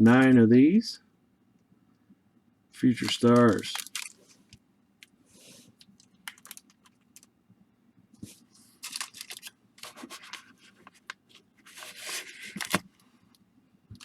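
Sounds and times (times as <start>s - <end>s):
wrappers crinkling: 3.0s - 4.5s, 5.8s - 7.3s, 8.6s - 12.8s.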